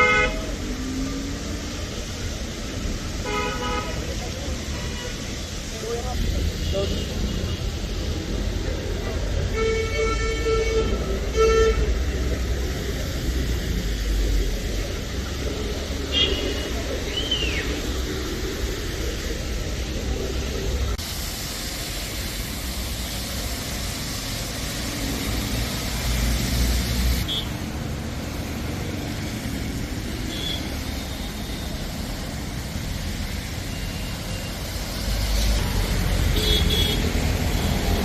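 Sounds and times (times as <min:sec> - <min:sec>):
vehicles passing: 0:00.0 - 0:38.0
car horn toots: 0:36.4 - 0:37.0.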